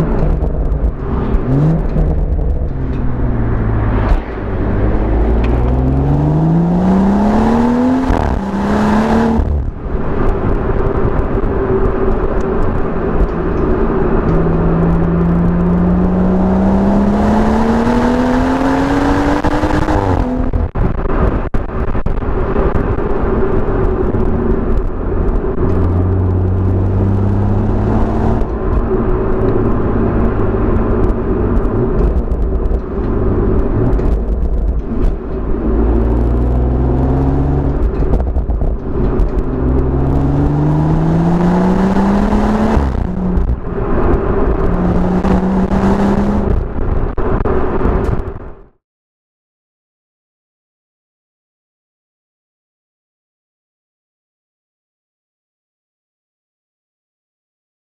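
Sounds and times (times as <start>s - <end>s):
exhaust crackles on overrun: 0.0s - 16.5s, 19.4s - 48.1s
car engine accelerating: 0.0s - 48.4s.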